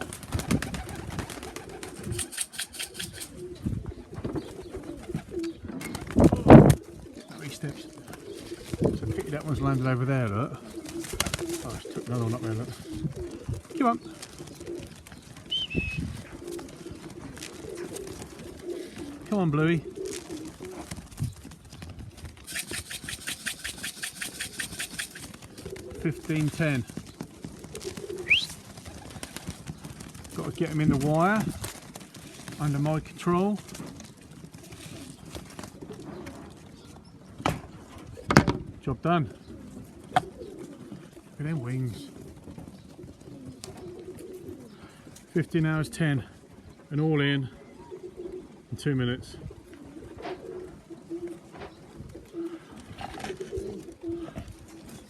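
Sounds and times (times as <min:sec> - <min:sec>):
pigeons cooing: 0:00.0 - 0:55.0
sharp clicks: 0:02.0 - 0:03.4, 0:22.5 - 0:25.4
tin of feed rattling: 0:02.0 - 0:03.4, 0:22.5 - 0:25.3.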